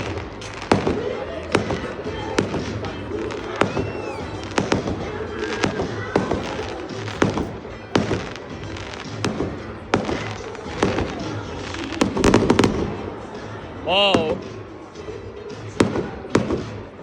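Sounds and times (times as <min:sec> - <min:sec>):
fireworks bangs: 0:00.0 - 0:13.2, 0:15.7 - 0:17.0
fireworks crackle: 0:00.0 - 0:13.5
music playing: 0:00.0 - 0:17.0.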